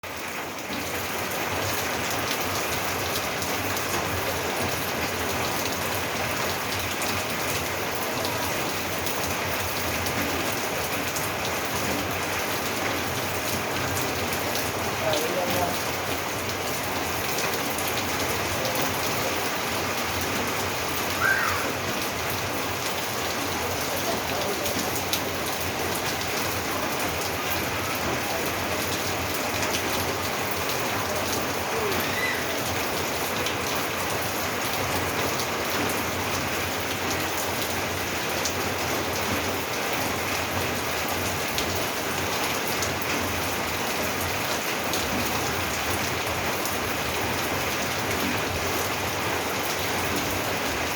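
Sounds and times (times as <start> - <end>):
rain falling on a roof: 0.0 - 50.9.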